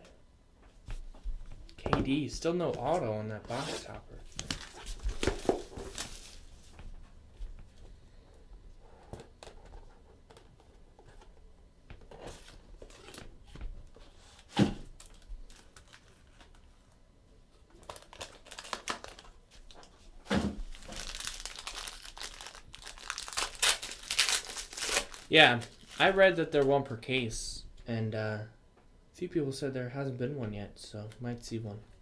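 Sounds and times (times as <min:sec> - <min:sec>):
cards rustling and clicking: 0:01.8 - 0:06.5, 0:20.6 - 0:26.7
wrappers crinkling and tearing: 0:02.8 - 0:06.7, 0:14.4 - 0:16.7, 0:17.7 - 0:20.0, 0:20.6 - 0:26.6.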